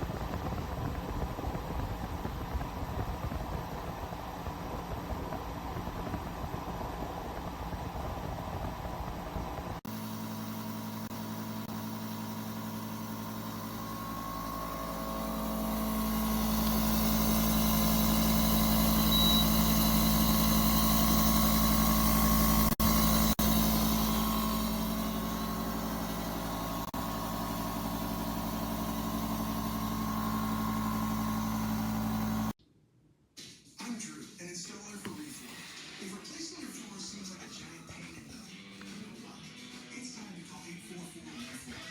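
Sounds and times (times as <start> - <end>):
dehumidifier humming: 0.0 - 32.6.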